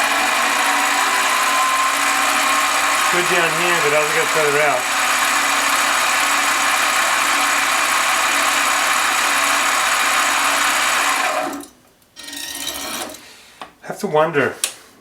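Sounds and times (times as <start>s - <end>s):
lathe motor whine: 0.0s - 11.6s.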